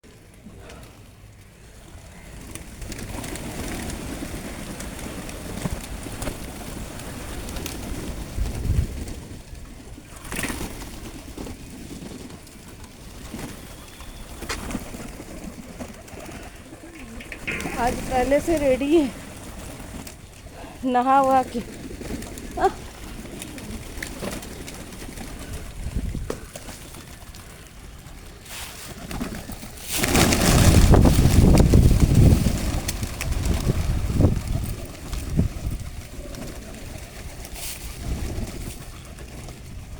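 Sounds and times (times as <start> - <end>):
wind noise on microphone: 5.9 - 9.8, 25.7 - 26.5, 30.1 - 36.5
pigeons cooing: 13.1 - 20.8, 35.9 - 39.3
sharp clicks: 17.0 - 18.6.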